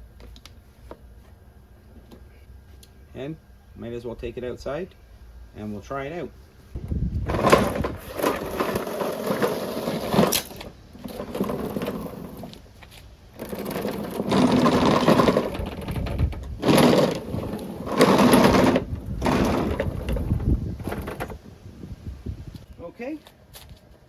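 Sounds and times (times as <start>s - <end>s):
lawn mower wheels rattling: 6.8s - 22.6s.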